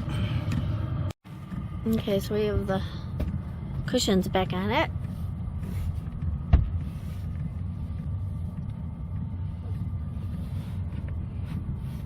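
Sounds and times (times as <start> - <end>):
air heater low rumble: 0.0 - 12.0
thump: 6.5 - 6.8.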